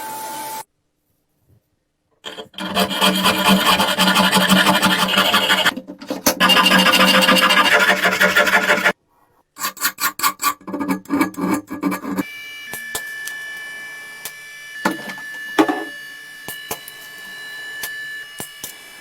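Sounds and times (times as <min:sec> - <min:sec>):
scraping rust off metal: 0:02.3 - 0:09.0, 0:09.6 - 0:12.2.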